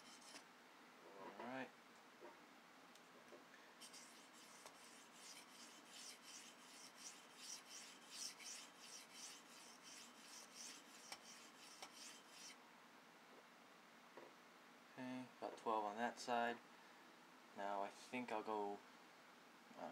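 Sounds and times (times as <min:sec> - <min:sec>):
knife blade rasping on sharpening stone: 0:03.8 - 0:12.6.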